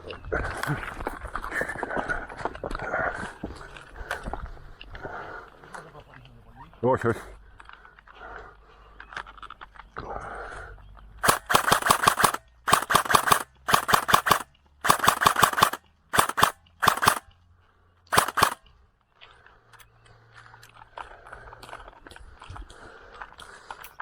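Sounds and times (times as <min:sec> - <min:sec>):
airsoft gun firing rapid bursts: 0:11.2 - 0:17.3, 0:18.1 - 0:18.6.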